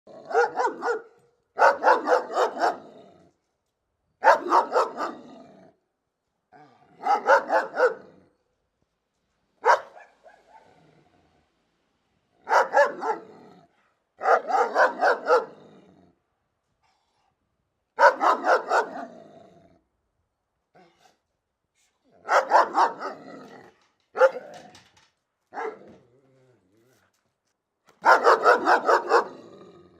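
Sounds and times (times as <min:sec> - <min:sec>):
big dog barking: 0:00.1 - 0:03.2, 0:04.2 - 0:05.6, 0:06.6 - 0:08.3, 0:09.6 - 0:11.0, 0:12.4 - 0:15.9, 0:18.0 - 0:19.4, 0:22.1 - 0:24.8, 0:25.5 - 0:26.1, 0:27.9 - 0:29.8.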